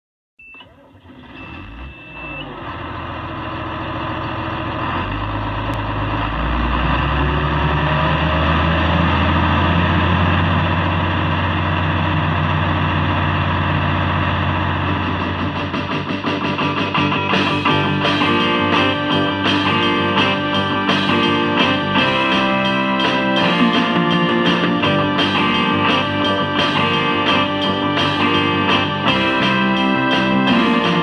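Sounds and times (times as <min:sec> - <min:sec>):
farm machinery engine revving: 0:00.9 - 0:16.2.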